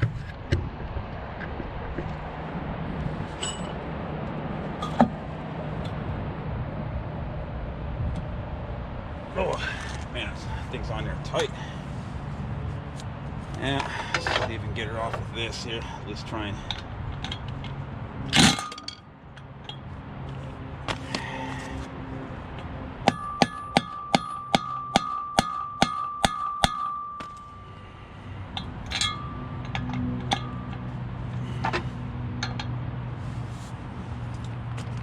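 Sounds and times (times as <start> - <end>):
hammer striking metal: 23.0 - 27.8.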